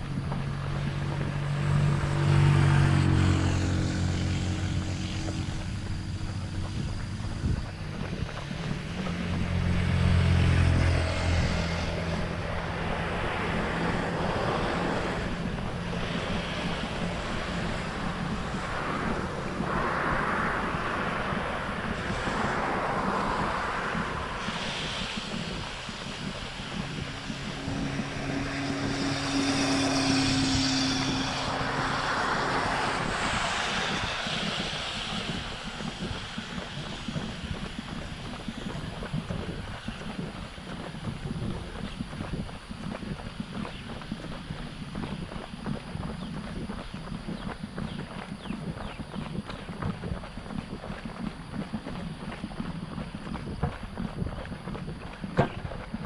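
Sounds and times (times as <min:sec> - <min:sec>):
vehicle engine hum: 0:00.0 - 0:56.0
wind on camera microphone: 0:00.0 - 0:56.0.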